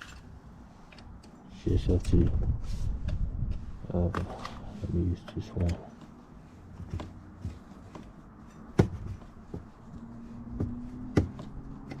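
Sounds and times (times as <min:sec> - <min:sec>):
hand tools clicking and knocking: 0:05.2 - 0:12.0.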